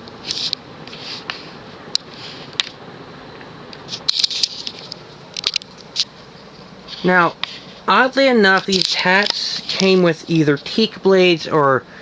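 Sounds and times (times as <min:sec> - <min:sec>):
ceiling fan humming: 0:00.0 - 0:12.0.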